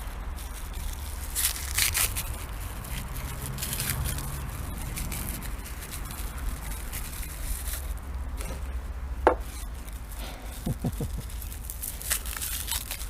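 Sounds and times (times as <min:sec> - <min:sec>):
packaging rustling: 0:09.4 - 0:13.0.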